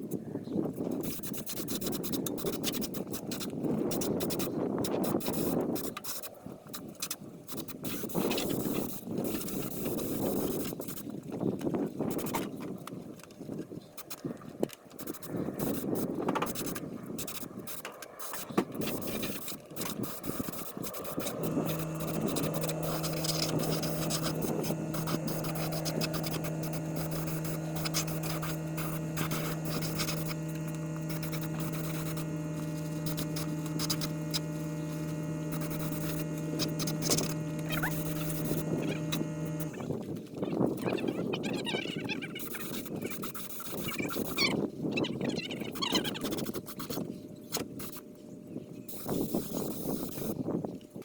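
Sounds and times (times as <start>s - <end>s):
motor humming: 15.0s - 40.3s, 42.4s - 50.5s.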